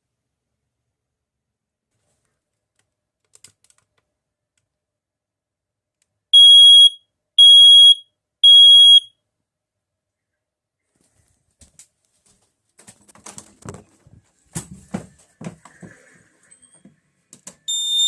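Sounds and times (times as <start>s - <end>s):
smoke alarm beeps: 6.4s - 9.1s, 17.7s - 18.0s.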